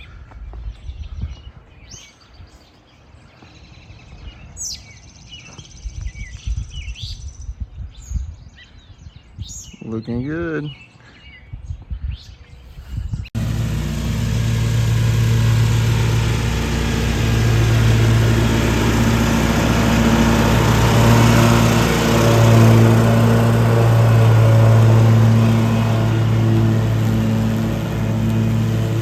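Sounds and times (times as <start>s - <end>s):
lawn mower engine running: 13.4s - 29.0s.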